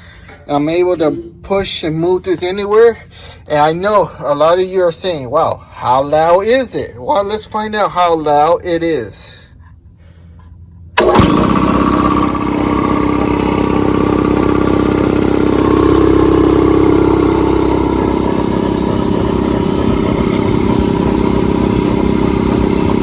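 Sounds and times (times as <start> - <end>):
air compressor running: 11.0 - 23.0.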